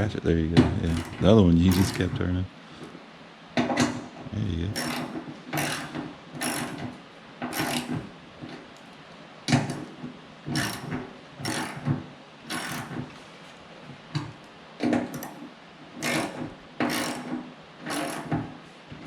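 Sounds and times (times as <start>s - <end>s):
hand ratchet clicking: 0.9s - 2.0s, 4.8s - 6.9s, 7.5s - 8.0s, 10.5s - 11.8s, 12.5s - 13.0s, 16.0s - 18.3s.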